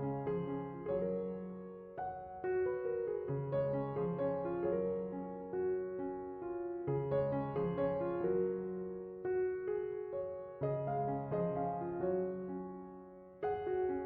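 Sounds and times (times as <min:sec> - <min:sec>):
soft piano music: 0:00.0 - 0:14.0.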